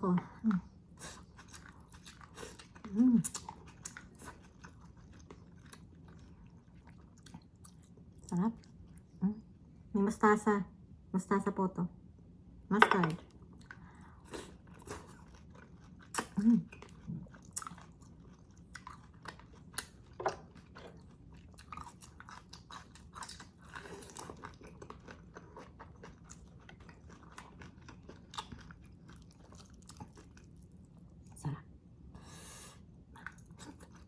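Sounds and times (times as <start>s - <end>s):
person chewing: 1.0s - 8.0s, 13.6s - 31.1s, 33.1s - 34.0s.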